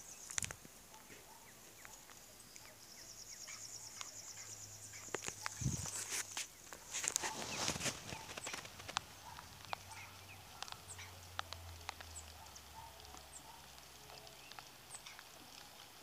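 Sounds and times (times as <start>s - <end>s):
rustle: 0.0s - 16.0s
hooves clicking and knocking: 5.0s - 16.0s.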